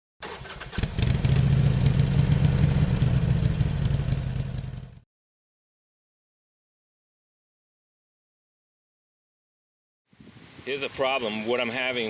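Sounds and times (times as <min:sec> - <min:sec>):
motorcycle engine running: 0:00.7 - 0:05.0.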